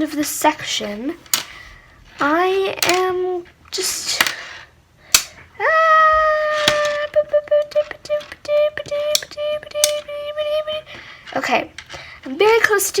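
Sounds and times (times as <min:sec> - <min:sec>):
magnet balls clicking together: 0:05.1 - 0:05.4, 0:06.6 - 0:10.5.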